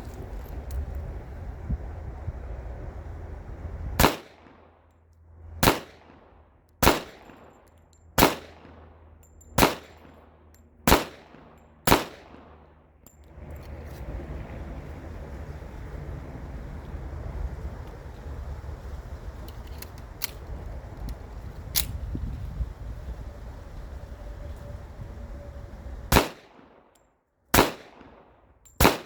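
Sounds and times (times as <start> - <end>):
pistol shots: 4.0 - 4.7, 5.6 - 6.2, 6.8 - 7.5, 8.2 - 8.9, 9.6 - 10.2, 10.9 - 12.7, 26.1 - 26.8, 27.5 - 29.0.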